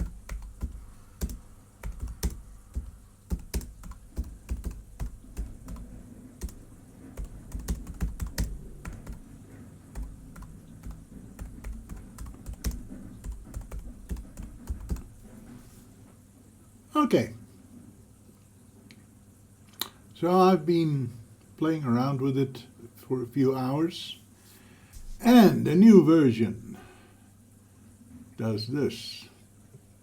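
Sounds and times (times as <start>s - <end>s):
keyboard typing: 0.0s - 15.4s.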